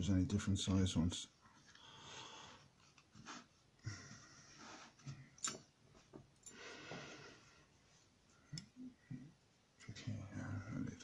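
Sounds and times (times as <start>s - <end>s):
faint breathing: 1.6s - 5.4s, 6.4s - 9.4s.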